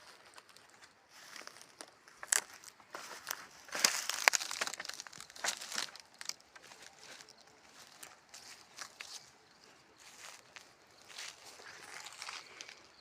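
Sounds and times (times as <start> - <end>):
dry material crumpling and crackling: 0.2 - 9.3.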